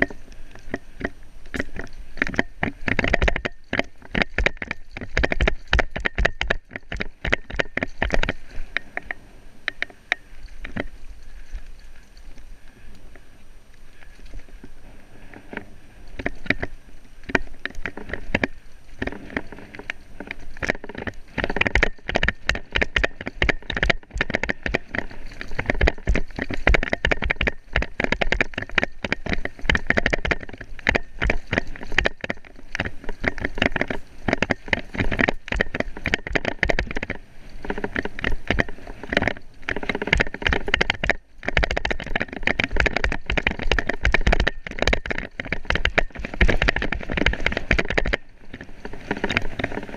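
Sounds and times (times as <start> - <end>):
vehicle clattering over rough ground: 15.4 - 49.9.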